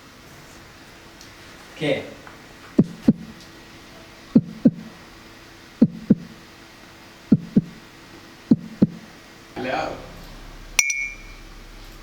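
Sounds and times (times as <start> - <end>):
heartbeat thumps: 2.8 - 3.4, 4.3 - 4.9, 5.8 - 6.4, 7.3 - 7.8, 8.5 - 9.1.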